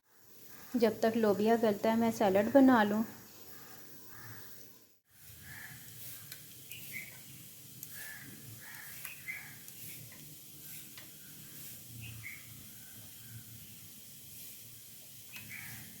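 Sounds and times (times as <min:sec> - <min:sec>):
birds calling: 0:03.3 - 0:04.6, 0:05.4 - 0:10.0, 0:11.1 - 0:12.6, 0:15.3 - 0:16.0.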